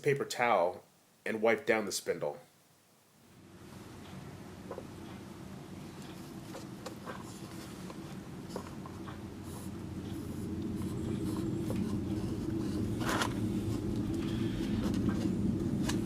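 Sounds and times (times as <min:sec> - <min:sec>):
low steady rumble: 0:03.3 - 0:16.0.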